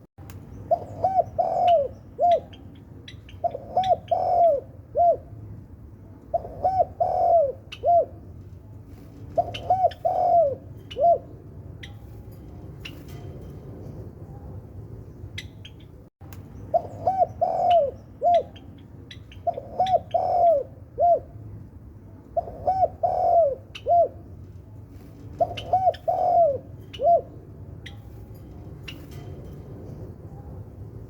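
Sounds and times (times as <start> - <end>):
dove cooing: 0.7 - 5.4, 6.3 - 8.3, 9.2 - 11.4, 16.7 - 21.4, 22.4 - 24.3, 25.2 - 28.0.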